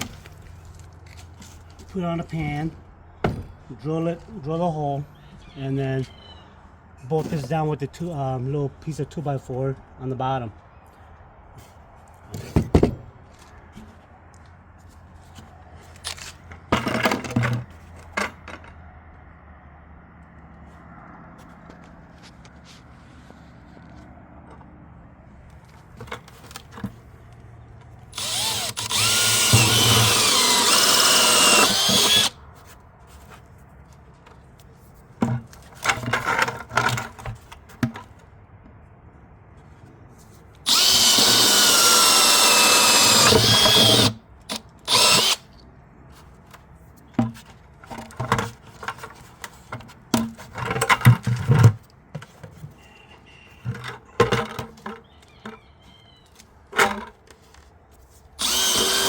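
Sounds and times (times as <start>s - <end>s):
power drill cutting plastic: 28.1s - 32.4s, 40.7s - 45.4s, 58.4s - 59.0s.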